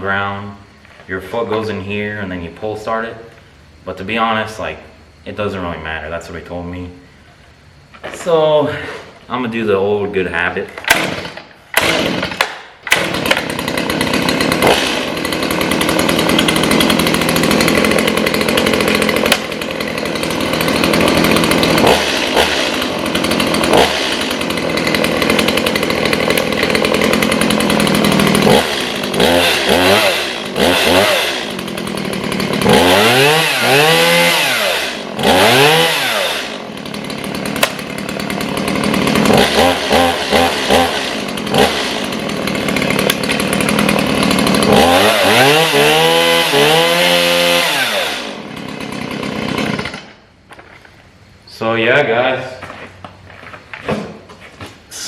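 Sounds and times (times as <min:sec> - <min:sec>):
chainsaw pull-start: 0:10.8 - 0:50.2
chainsaw running and revving: 0:10.9 - 0:50.2.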